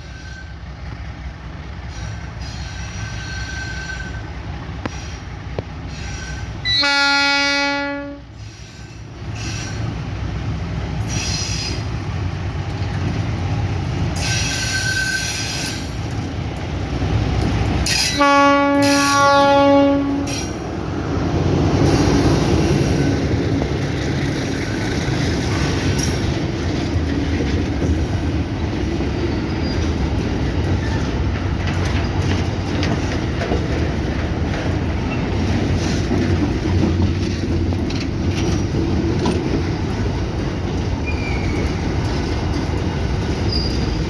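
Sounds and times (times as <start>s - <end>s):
train rumble: 0.0s - 44.0s
freight train horn blasts: 6.1s - 9.0s, 17.9s - 20.6s.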